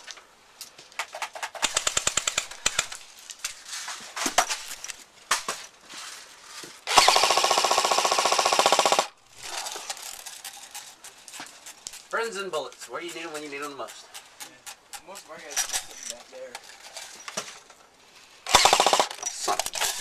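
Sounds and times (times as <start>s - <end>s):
airsoft guns firing: 1.5s - 3.0s, 6.9s - 9.1s, 18.5s - 20.0s.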